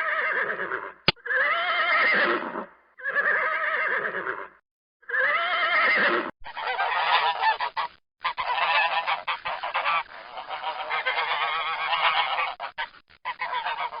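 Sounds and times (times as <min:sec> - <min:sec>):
geese honking: 0:05.8 - 0:14.0.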